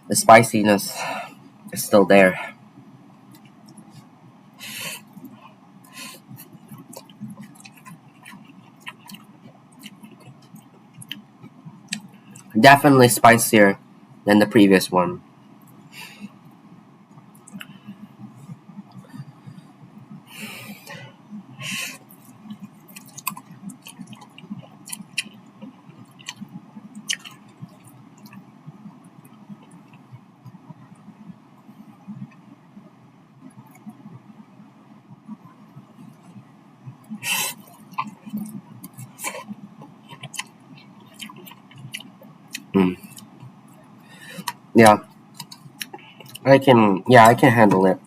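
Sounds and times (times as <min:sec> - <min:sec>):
breathy hiss: 0:00.7 - 0:01.4, 0:04.6 - 0:05.1, 0:37.2 - 0:37.7
chewing noodles with wet clicks: 0:03.3 - 0:04.1, 0:06.2 - 0:12.6, 0:17.1 - 0:17.8, 0:22.1 - 0:31.3, 0:35.9 - 0:43.6, 0:44.3 - 0:46.4.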